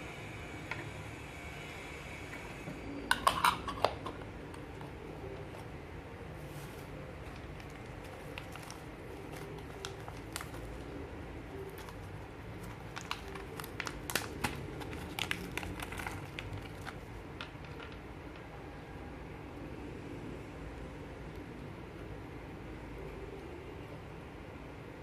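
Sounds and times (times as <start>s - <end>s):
steady low hum: 0.0s - 25.0s
grill clicks and crackles: 7.2s - 18.4s.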